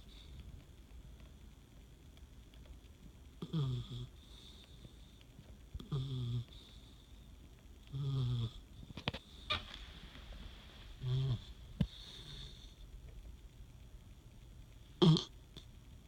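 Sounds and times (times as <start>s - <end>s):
buzzing snores: 3.4s - 4.5s, 5.8s - 6.6s, 7.9s - 8.6s, 11.0s - 12.6s, 15.0s - 15.4s.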